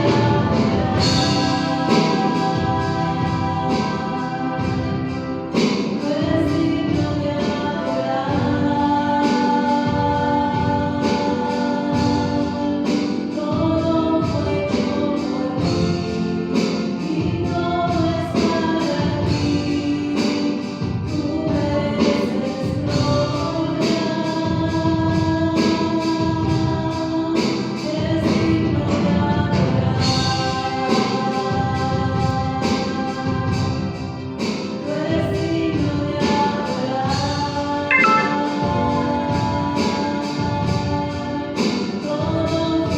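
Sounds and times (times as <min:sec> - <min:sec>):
choir singing worship song: 0:00.0 - 0:42.9
instrumental backing with beat: 0:37.9 - 0:39.0.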